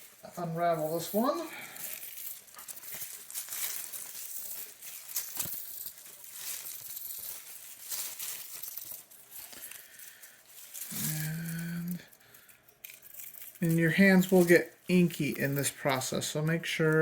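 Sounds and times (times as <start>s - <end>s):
typewriter ribbon rustling and clicking: 1.2s - 15.9s.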